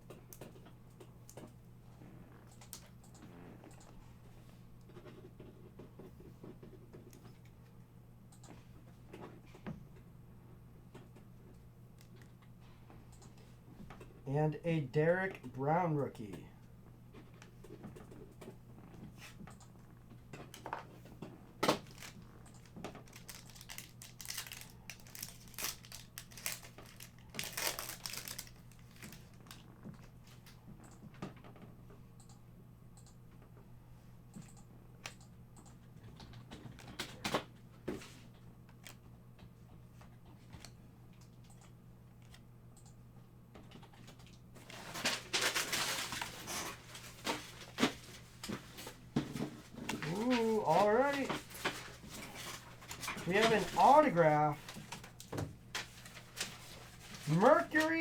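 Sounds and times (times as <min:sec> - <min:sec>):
trading cards clicking: 0:21.7 - 0:29.4
foil wrapper crinkling: 0:21.8 - 0:29.6, 0:44.7 - 0:48.2, 0:55.8 - 0:58.0.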